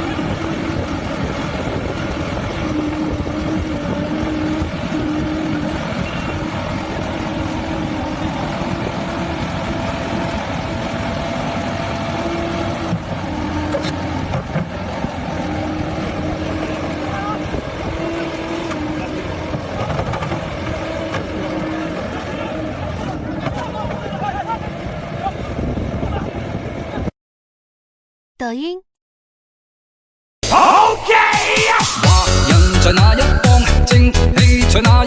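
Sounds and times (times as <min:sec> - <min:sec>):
excavator diesel engine running: 0:00.0 - 0:27.0, 0:32.0 - 0:35.0.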